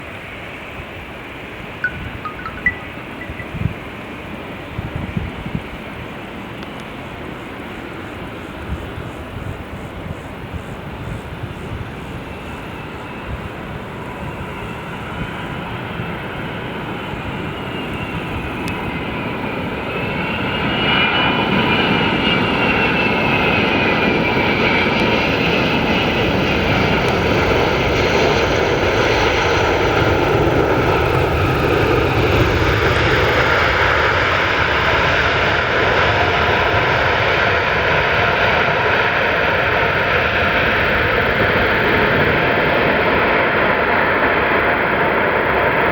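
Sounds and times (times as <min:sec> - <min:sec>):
jet engines roaring: 0:17.6 - 0:45.9.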